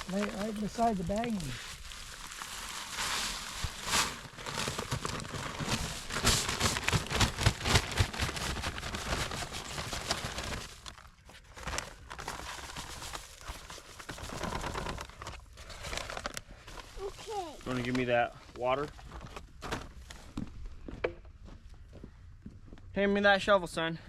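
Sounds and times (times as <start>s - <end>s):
concrete bag crinkling and scraping: 0.0s - 20.4s.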